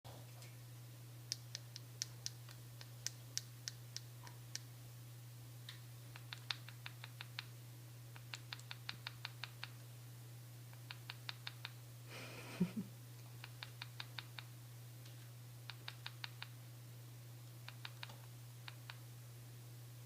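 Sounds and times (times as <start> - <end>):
steady low hum: 0.1 - 20.0
parrot tapping beak: 6.2 - 7.5, 8.2 - 9.8, 10.8 - 11.8, 17.6 - 19.0.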